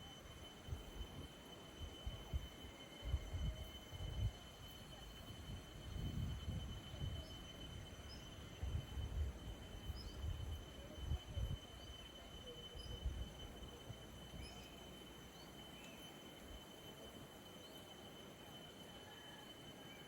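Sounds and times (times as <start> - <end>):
faint bird chirps: 0.0 - 20.0
high insect-like tone: 0.0 - 20.0
wind gusts on microphone: 1.9 - 14.0.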